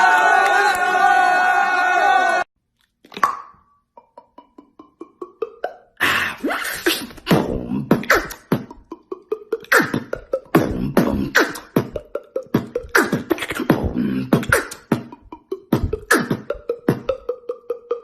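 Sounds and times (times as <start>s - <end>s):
beatboxing: 4.0s - 18.0s.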